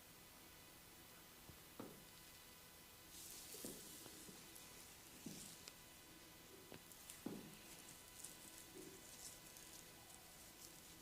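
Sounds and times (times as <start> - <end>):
hands rubbing hair and scalp: 3.1 - 5.8, 6.8 - 11.0.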